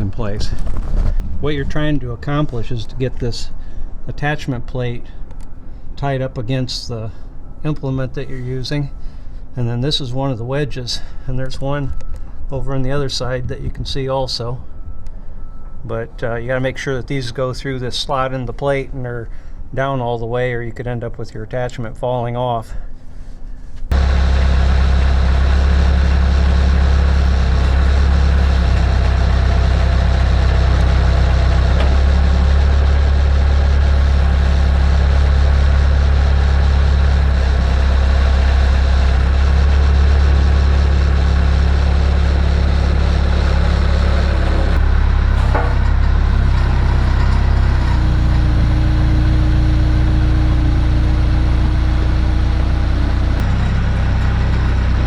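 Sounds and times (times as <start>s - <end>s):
loader engine running: 23.8s - 55.0s.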